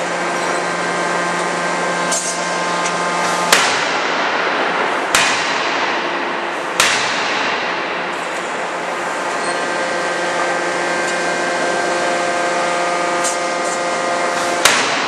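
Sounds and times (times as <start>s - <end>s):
steady machine hum: 0.0s - 15.0s
forging hammer bangs with ringing: 3.5s - 8.0s, 14.6s - 15.0s.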